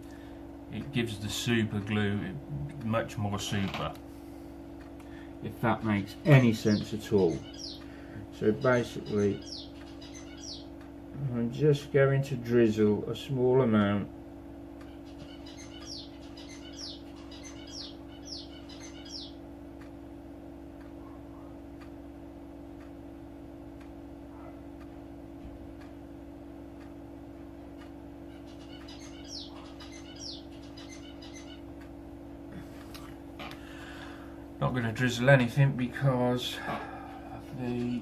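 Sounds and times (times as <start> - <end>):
low electrical hum: 0.0 - 38.0
bird chirping: 6.2 - 10.8, 14.8 - 19.4, 28.3 - 31.8.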